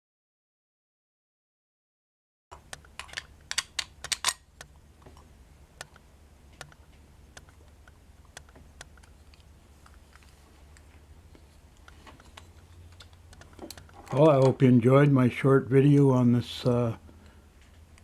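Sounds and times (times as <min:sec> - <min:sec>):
sharp clicks and light taps: 0:02.5 - 0:11.0, 0:11.8 - 0:14.6
steady low hum: 0:02.5 - 0:18.0.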